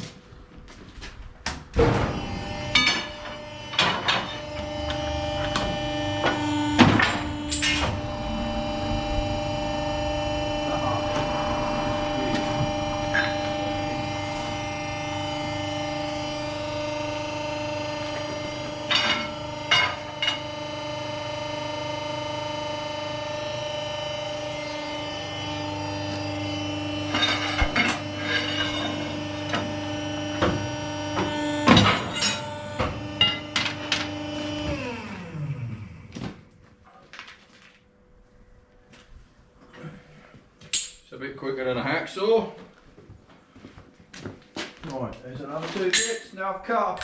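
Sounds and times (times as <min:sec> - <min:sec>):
metal clanks and knocks: 0:01.5 - 0:15.2, 0:27.1 - 0:29.8
electric motor humming: 0:02.1 - 0:36.1.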